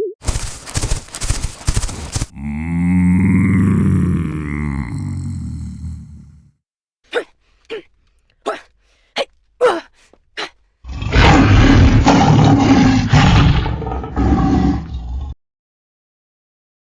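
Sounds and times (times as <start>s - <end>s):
monster roar: 0.3s - 6.5s, 10.9s - 15.4s.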